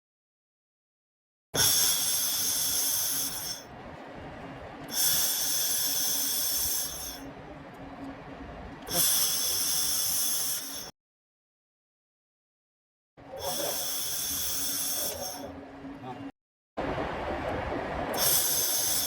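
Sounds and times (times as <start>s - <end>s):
laser welder hissing: 1.6s - 3.6s, 4.9s - 7.3s, 8.9s - 10.9s, 13.4s - 15.5s.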